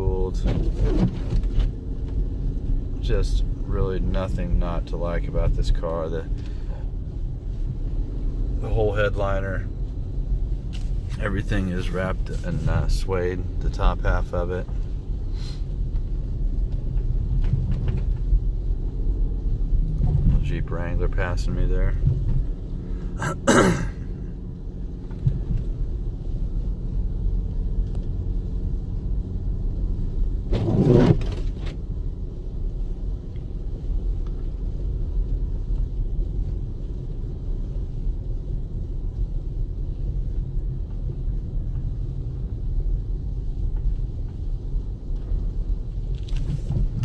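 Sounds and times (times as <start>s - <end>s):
engine and tyres rumbling: 0.0s - 47.0s.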